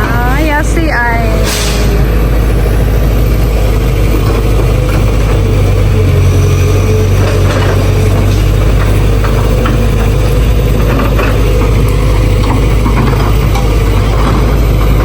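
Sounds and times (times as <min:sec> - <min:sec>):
excavator diesel engine running: 0:00.0 - 0:15.0.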